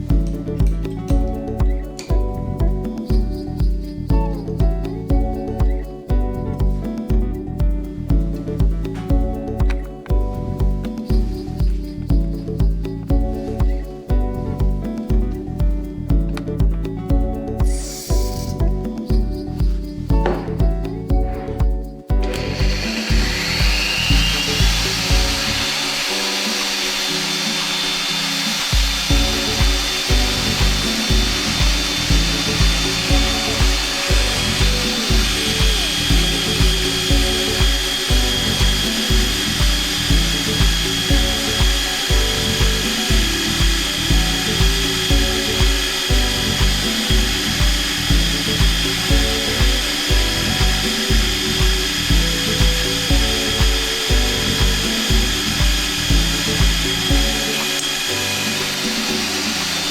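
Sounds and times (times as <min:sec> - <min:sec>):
music with kick drum beat: 0:00.0 - 0:59.9
drilling machine whine: 0:22.2 - 0:59.9.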